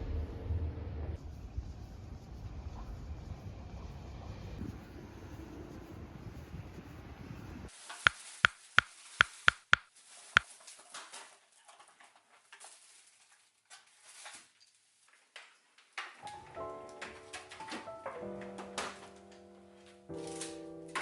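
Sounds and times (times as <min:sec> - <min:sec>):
sharp clicks: 0:08.1 - 0:09.9.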